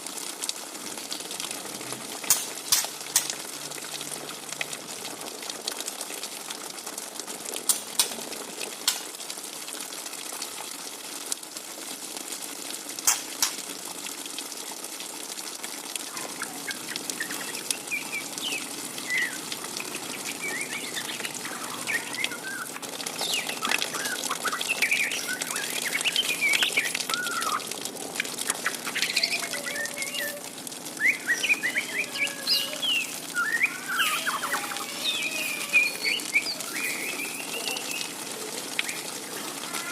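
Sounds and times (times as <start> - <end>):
steady hiss: 16.0 - 39.9
bird chirping and chattering: 16.1 - 27.7, 28.4 - 30.4, 31.0 - 39.9.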